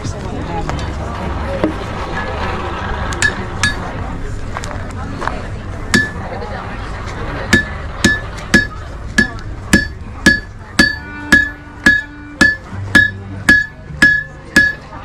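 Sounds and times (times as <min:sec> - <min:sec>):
hammer striking anvil: 0:03.2 - 0:03.9, 0:05.9 - 0:06.2, 0:07.5 - 0:15.0.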